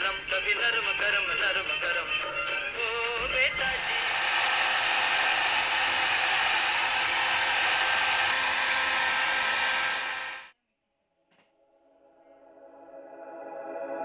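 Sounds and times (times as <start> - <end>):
small electric blower whirring: 3.5 - 10.5.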